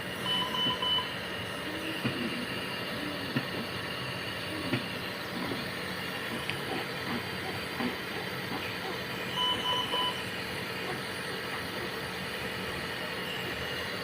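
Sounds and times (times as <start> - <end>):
room equipment hum: 0.0 - 14.0
patient monitor beeps: 0.2 - 1.2, 9.2 - 10.3.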